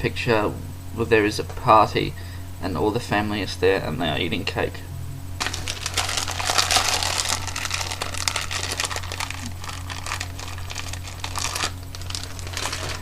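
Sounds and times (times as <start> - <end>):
crinkling and crunching: 5.4 - 13.0
rapid crackles: 5.4 - 13.0.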